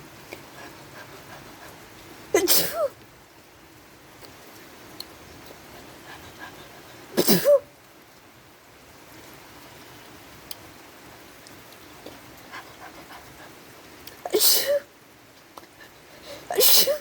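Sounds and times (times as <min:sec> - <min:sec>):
person sneezing: 0:02.4 - 0:02.9, 0:07.2 - 0:07.7, 0:14.3 - 0:14.9, 0:16.5 - 0:17.0.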